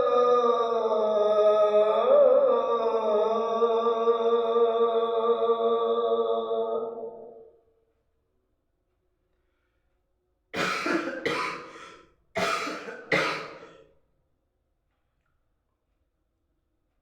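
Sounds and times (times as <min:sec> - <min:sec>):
person coughing: 0:10.6 - 0:13.8.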